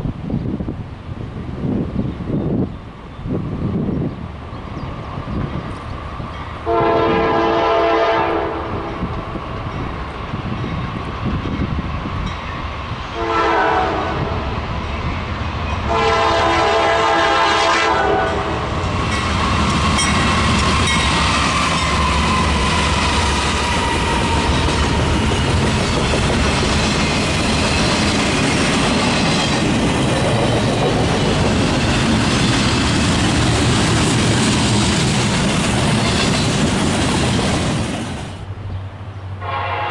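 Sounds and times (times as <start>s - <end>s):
train wheels on rails: 0.0s - 39.8s
locomotive air horn blasts: 6.6s - 9.0s, 13.2s - 14.4s, 15.9s - 18.7s, 39.4s - 39.9s.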